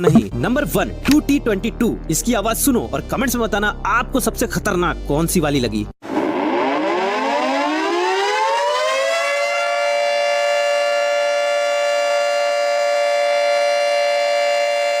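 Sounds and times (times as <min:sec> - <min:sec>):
mechanical siren wailing: 0:06.1 - 0:15.0.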